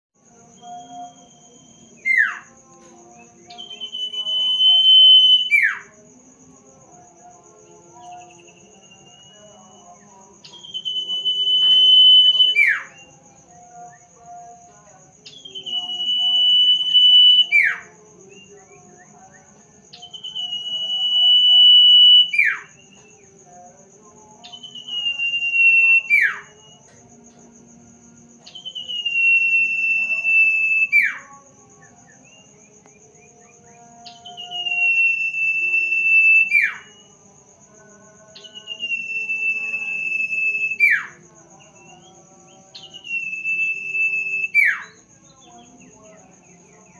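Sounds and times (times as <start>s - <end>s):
bird whistling call: 0.6s - 2.5s, 24.5s - 26.4s, 42.8s - 45.0s.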